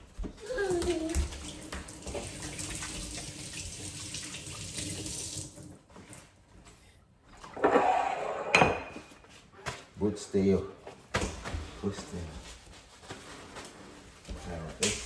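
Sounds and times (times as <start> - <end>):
tap running into sink: 0.7 - 5.6.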